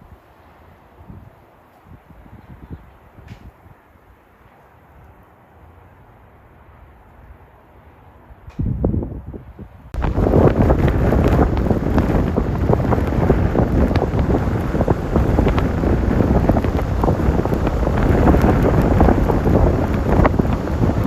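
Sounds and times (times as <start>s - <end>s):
strong storm wind on microphone: 0.0s - 3.9s, 8.2s - 21.0s
crackling: 10.0s - 21.0s.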